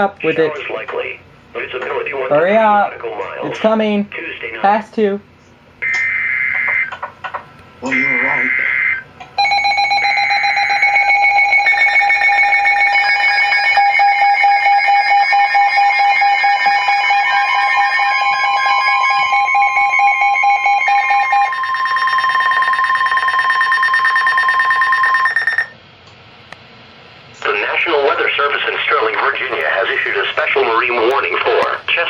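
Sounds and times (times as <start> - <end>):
rapid electronic beeps: 5.8 - 7.0, 7.9 - 22.9
electronic alarm tones: 5.8 - 7.1, 7.8 - 25.8.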